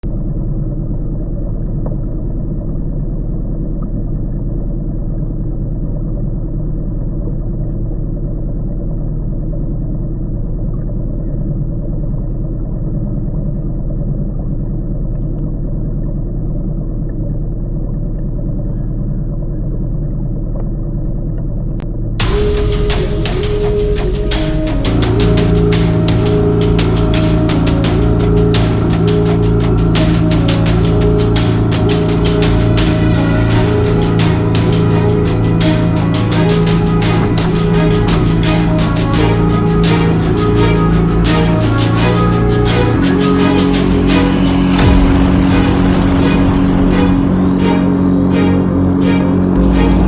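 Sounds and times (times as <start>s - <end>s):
music: 22.2s - 50.0s.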